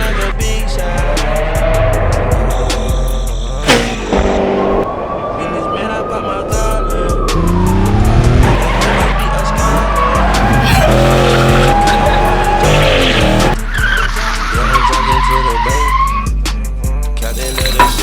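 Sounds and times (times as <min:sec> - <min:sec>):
hip-hop beat with bass: 0:00.0 - 0:04.4, 0:06.5 - 0:18.0
car engine revving: 0:00.0 - 0:05.3, 0:06.6 - 0:15.6
car tyres squealing: 0:00.0 - 0:16.6.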